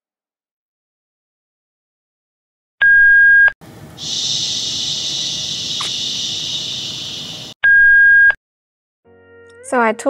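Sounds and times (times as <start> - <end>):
steady high hiss: 4.0 - 7.6.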